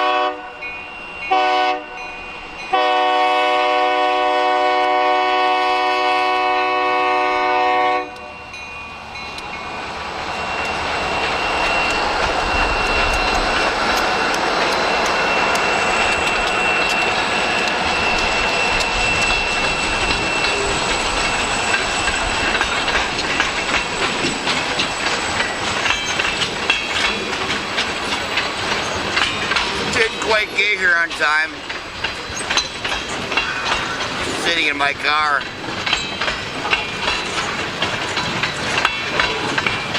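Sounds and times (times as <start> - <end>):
locomotive air horn: 0.0 - 0.6, 1.3 - 2.0, 2.7 - 8.3
freight train rumbling past: 0.0 - 39.9
rail-joint clicks: 8.1 - 39.9
wheel squeal: 10.4 - 30.0, 31.6 - 34.4.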